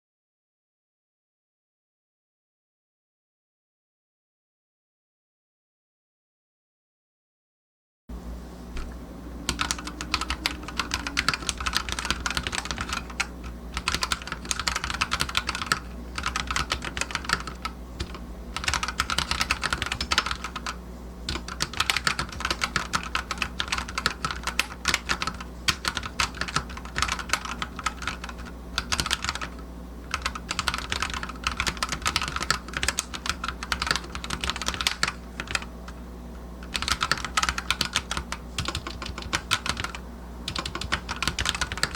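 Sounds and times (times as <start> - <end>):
mechanical keyboard typing: 9.5 - 35.7, 36.6 - 41.9.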